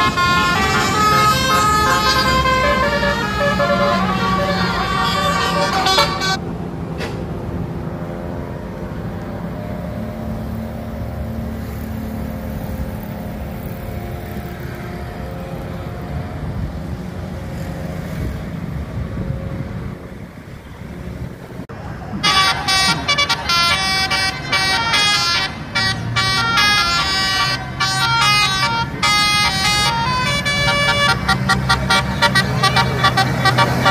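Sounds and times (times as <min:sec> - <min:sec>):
bus horn playing a melody: 0:00.0 - 0:06.4, 0:22.1 - 0:33.9
bus engines: 0:00.0 - 0:33.9
traffic: 0:00.0 - 0:33.9.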